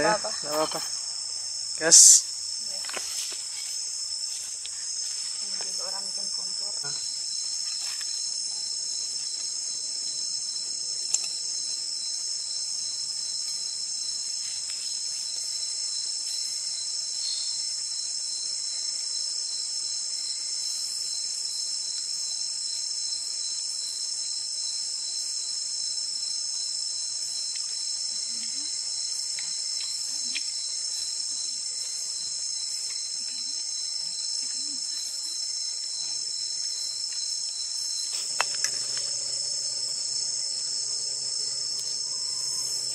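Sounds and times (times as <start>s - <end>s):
crickets and insects chirping: 0.0s - 42.9s.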